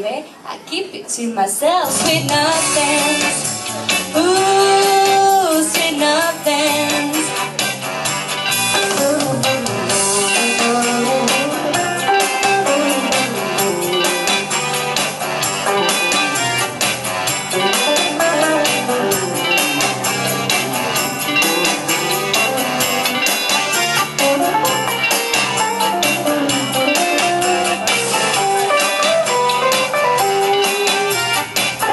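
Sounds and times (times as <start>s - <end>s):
instrumental pop music: 1.8s - 31.9s
electric guitar: 1.9s - 31.9s
steady drum beat: 7.2s - 31.9s.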